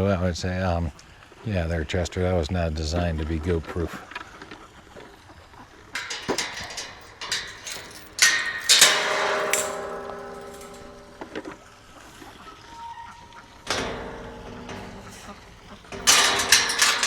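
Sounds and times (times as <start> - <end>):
metal clanking: 5.9 - 17.0
metallic ringing tone: 6.0 - 17.0.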